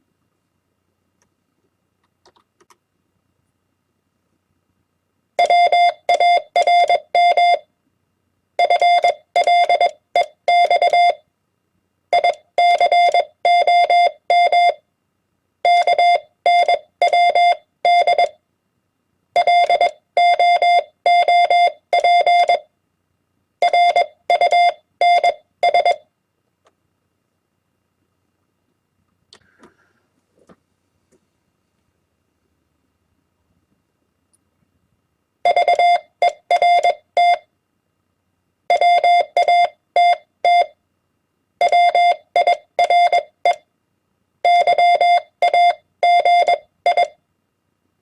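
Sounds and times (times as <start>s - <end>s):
morse code beeps: 8.6s - 11.2s, 12.2s - 14.8s, 15.7s - 18.4s, 19.4s - 22.7s, 23.6s - 26.0s, 35.5s - 37.5s, 38.7s - 40.8s, 41.6s - 43.6s, 44.5s - 47.2s.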